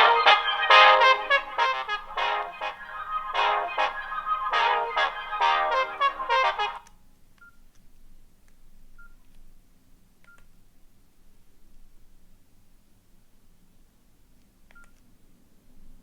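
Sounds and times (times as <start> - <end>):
loud phone melody: 0.0 - 6.8
keypad beeps with clicks: 7.4 - 7.6, 9.0 - 9.3, 10.2 - 10.5, 14.7 - 15.0.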